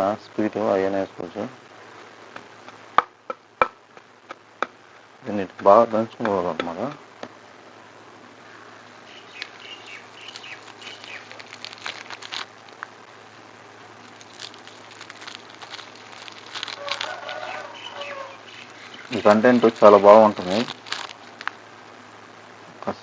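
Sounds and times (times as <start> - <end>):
birds chirping: 8.4 - 13.0, 14.0 - 21.4.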